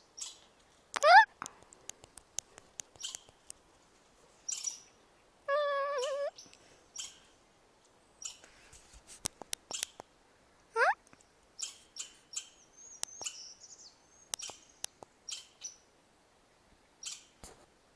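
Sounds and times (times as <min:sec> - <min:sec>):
chipmunk clicks and chirps: 0:00.2 - 0:03.6, 0:04.5 - 0:04.8, 0:08.2 - 0:08.5, 0:09.3 - 0:10.1, 0:10.8 - 0:13.6, 0:14.2 - 0:15.8, 0:17.0 - 0:17.3
chipmunk wavering call: 0:05.5 - 0:06.4, 0:10.8 - 0:11.0.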